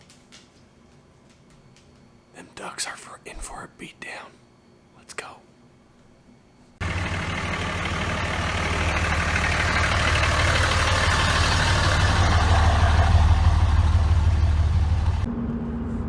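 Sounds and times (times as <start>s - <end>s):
vehicle engine humming: 6.8s - 16.0s.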